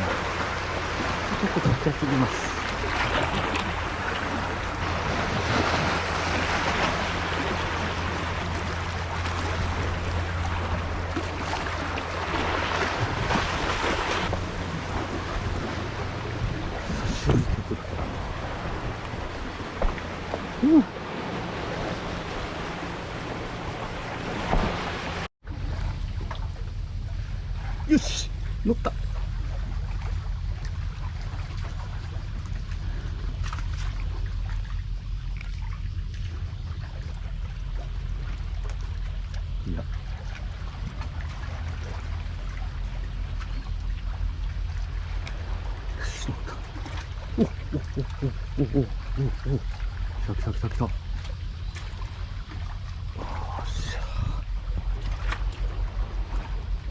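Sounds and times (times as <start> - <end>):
sea waves washing: 0.0 - 25.3
hum-like tone: 0.0 - 56.9
sea water sloshing and trickling: 0.0 - 56.9
steady low rumble: 0.0 - 56.9
wind buffeting microphone: 12.9 - 23.9.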